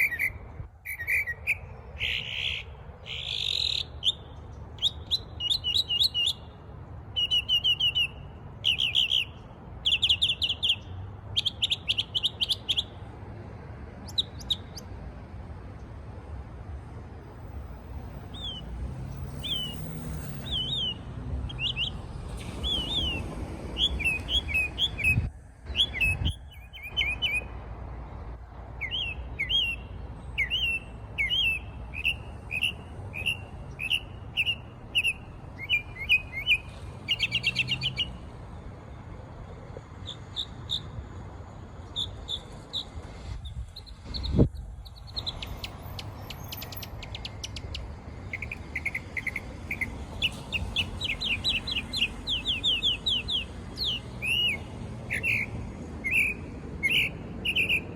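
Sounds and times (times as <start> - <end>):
songbird chirping: 0.0 - 12.9, 17.9 - 27.6, 28.8 - 38.3, 41.8 - 57.9
fast bird trill: 19.4 - 23.2.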